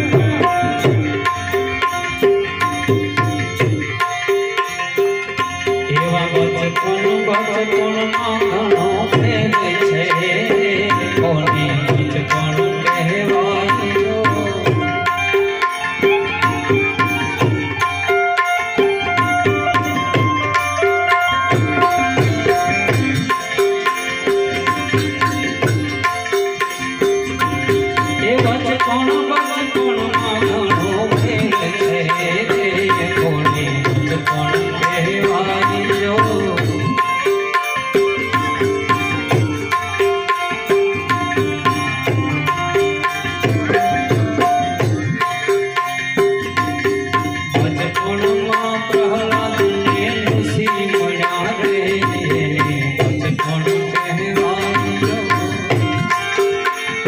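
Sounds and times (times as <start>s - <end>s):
harmonium chords: 0.0s - 57.0s
tabla and percussion rhythm: 0.0s - 57.0s.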